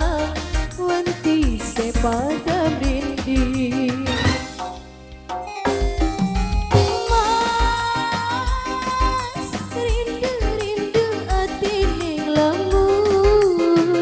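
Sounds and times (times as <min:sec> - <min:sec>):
low drum beat: 0:00.0 - 0:13.8
wavering lead melody: 0:03.6 - 0:12.2.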